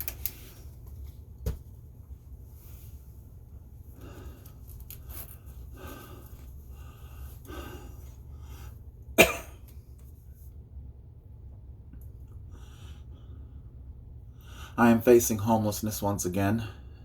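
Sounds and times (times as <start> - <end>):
low steady hum: 0.0 - 17.0
man breathing: 3.9 - 8.9, 12.5 - 14.8
man coughing: 9.2 - 9.6.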